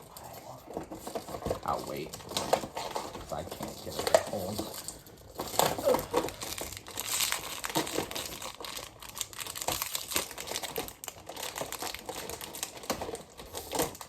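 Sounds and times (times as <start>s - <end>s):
toy packaging crinkling: 0.0s - 14.0s.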